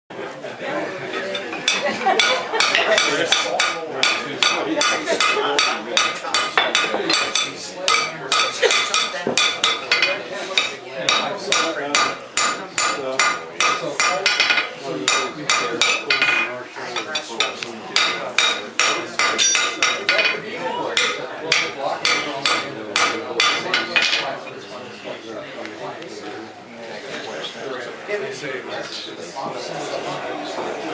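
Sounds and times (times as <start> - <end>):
hammer striking metal on anvil: 2.2 - 16.5, 17.4 - 20.4, 21.0 - 24.2.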